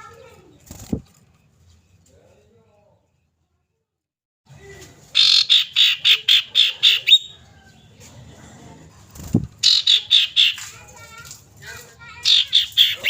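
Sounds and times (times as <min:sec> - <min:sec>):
bird harsh rasping calls: 0:05.2 - 0:07.4, 0:09.6 - 0:10.7, 0:12.2 - 0:13.0.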